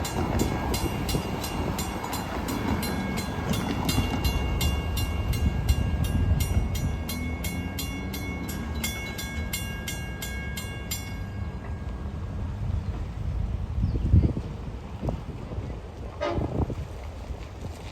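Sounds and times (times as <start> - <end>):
crossing warning bell ringing: 0.0 - 12.8.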